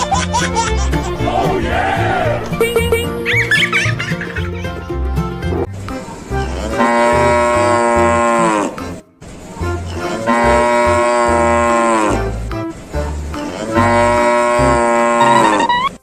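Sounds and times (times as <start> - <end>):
cow mooing: 6.5 - 8.9, 10.0 - 12.3, 13.4 - 15.8.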